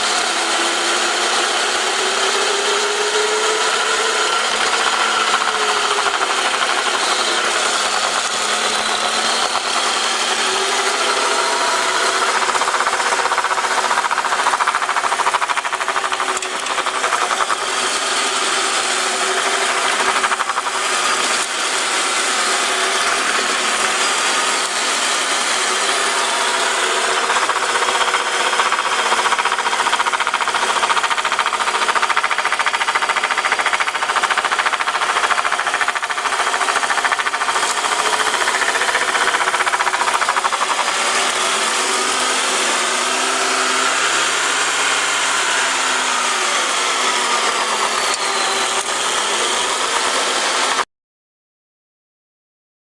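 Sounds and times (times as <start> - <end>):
rapid metallic rattling: 3.8 - 25.2, 26.1 - 42.1.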